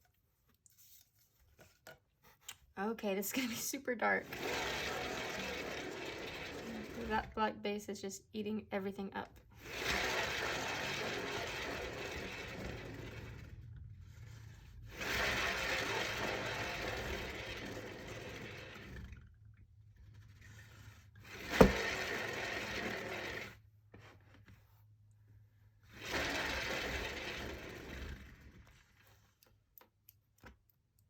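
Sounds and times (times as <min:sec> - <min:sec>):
turntable bearing whirring: 0:04.2 - 0:07.4, 0:09.6 - 0:19.0, 0:21.2 - 0:23.5.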